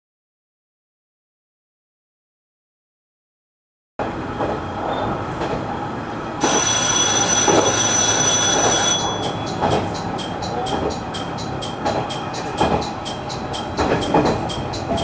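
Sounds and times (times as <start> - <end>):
diesel railcar running: 4.0 - 15.0
repeating warning chime: 6.4 - 15.0
warning bell ringing: 6.4 - 15.0.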